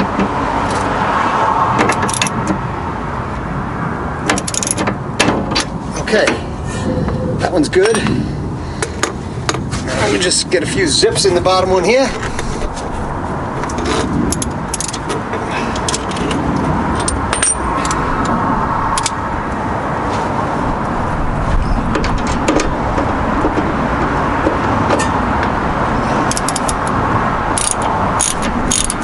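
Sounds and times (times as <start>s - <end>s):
steady rushing noise: 0.0s - 29.0s
wrench clicking on metal: 4.4s - 4.8s, 26.3s - 26.9s, 27.6s - 29.0s.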